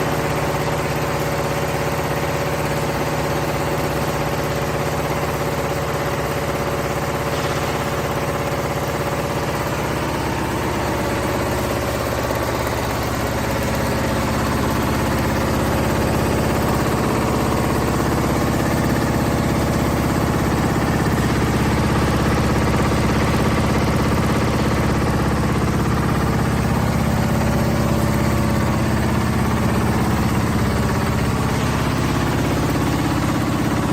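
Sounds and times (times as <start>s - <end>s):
machine humming: 7.1s - 33.9s.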